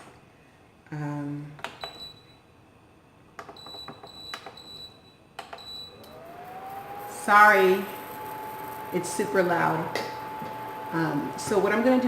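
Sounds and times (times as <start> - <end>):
induction cooktop whine: 5.6 - 12.0.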